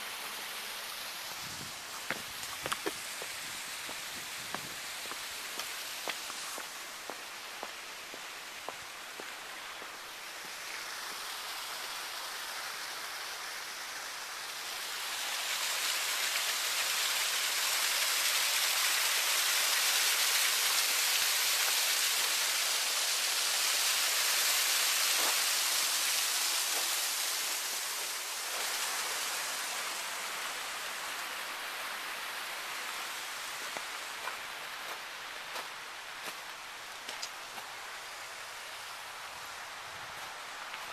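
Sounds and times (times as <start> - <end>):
waterfall splashing into pool: 0.0 - 36.4.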